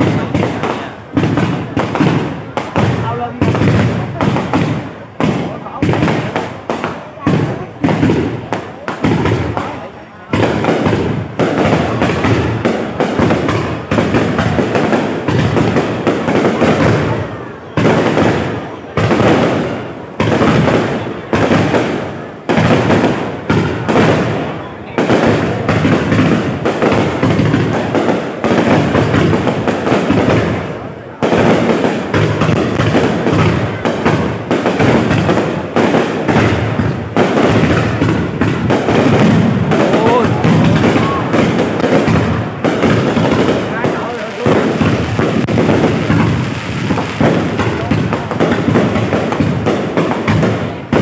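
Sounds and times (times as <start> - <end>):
fireworks bursting and crackling: 0.0 - 51.0.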